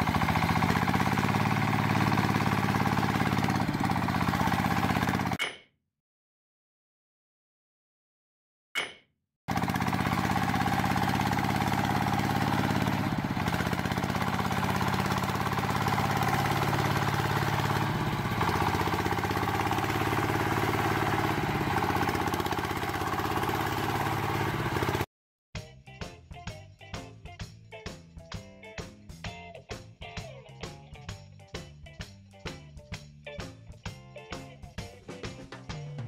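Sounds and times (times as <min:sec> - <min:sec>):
small engine running: 0:00.0 - 0:05.4, 0:09.5 - 0:25.1.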